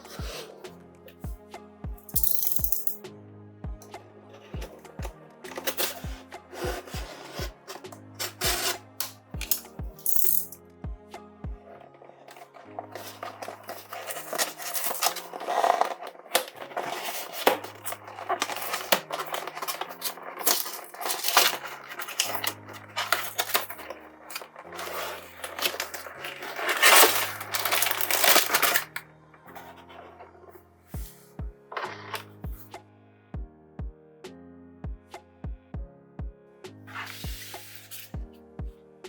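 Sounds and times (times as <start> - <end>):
background music with bass line: 0.0 - 11.9, 30.8 - 39.0
plastic parts clicking and clattering: 2.0 - 3.0, 4.6 - 10.6, 12.2 - 29.0.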